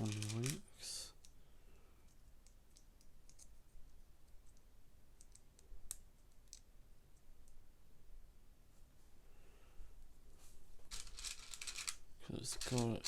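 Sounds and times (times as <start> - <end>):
plastic pieces clicking together: 0.0 - 0.6, 10.9 - 13.0.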